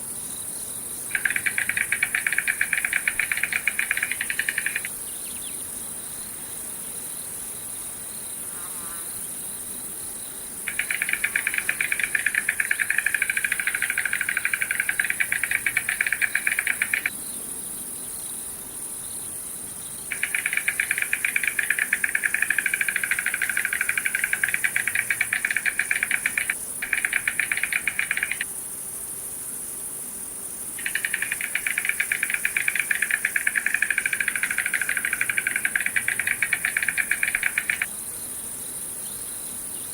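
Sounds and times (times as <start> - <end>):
high-pitched hiss: 0.0 - 39.9
insect trilling: 1.1 - 4.9, 10.6 - 17.2, 20.1 - 28.6, 30.8 - 38.0.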